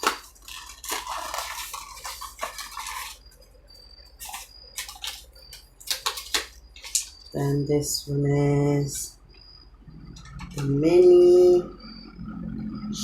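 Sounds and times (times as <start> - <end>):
pencils and packaging clicking: 0.0 - 7.7, 10.1 - 10.9.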